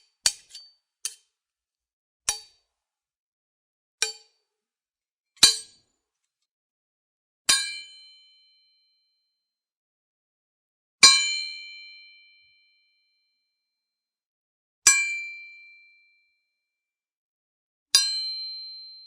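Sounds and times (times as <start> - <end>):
sword blades clanging on metal: 0.3 - 1.2.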